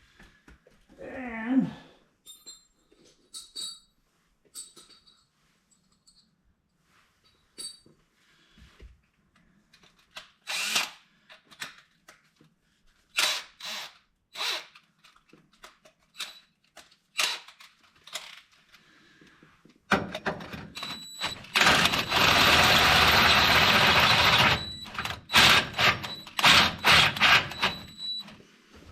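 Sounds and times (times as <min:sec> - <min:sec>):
electric drill drilling metal: 0:10.5 - 0:11.0, 0:13.2 - 0:14.7, 0:20.8 - 0:27.9.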